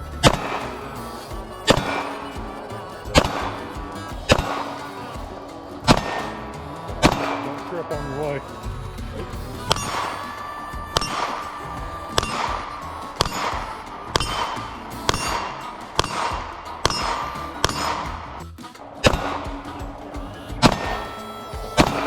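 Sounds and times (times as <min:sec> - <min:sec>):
faint background music: 0:00.0 - 0:22.0
gunshots: 0:14.2 - 0:18.0.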